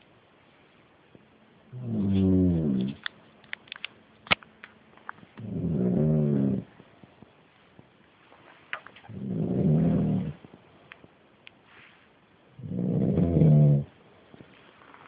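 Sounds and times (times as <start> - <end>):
man snoring loudly: 12.6 - 13.9.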